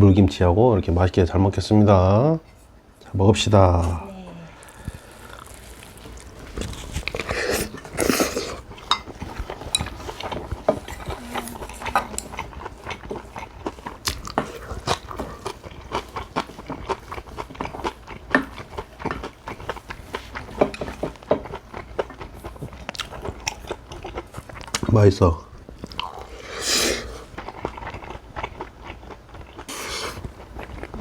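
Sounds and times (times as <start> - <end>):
person chewing and biting: 4.6 - 24.9, 25.6 - 31.0
rustling and scraping: 5.3 - 12.1.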